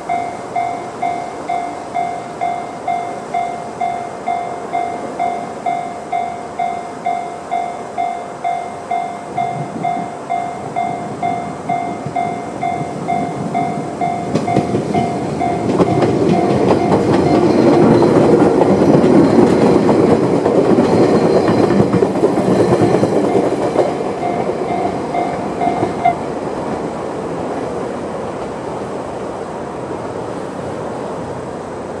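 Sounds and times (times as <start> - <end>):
level-crossing electronic bell: 0.0 - 20.1, 20.8 - 26.2
train rumble and wheel clatter: 0.0 - 32.0.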